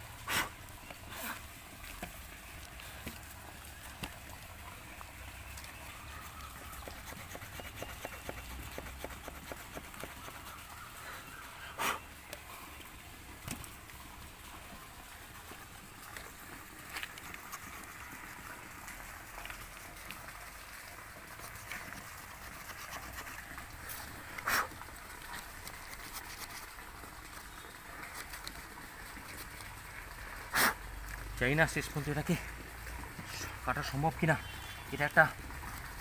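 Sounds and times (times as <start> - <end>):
saw rasping through branch: 6.2 - 10.8, 21.4 - 23.5.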